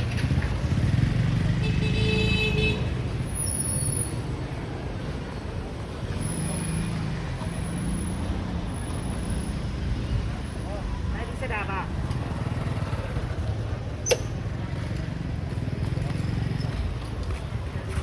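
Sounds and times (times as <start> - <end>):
vehicle engines running: 0.0 - 18.0
car horn: 1.6 - 2.9.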